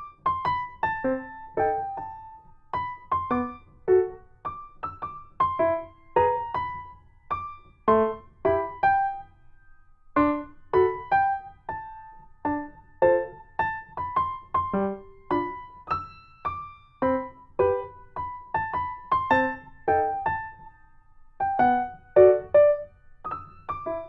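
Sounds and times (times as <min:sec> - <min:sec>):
slow piano melody: 0:00.0 - 0:24.0.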